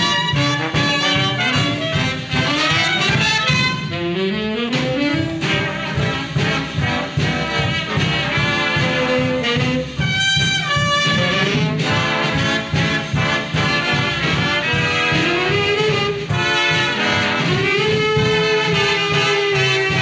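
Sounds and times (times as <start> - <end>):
big band playing swing: 0.0 - 20.0.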